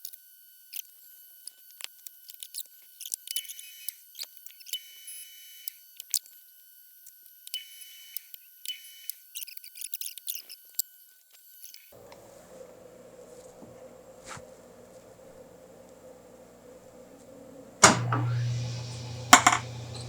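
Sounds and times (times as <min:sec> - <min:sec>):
metal lathe whining: 0:12.0 - 0:20.0
cutting tool scraping metal: 0:17.9 - 0:20.0.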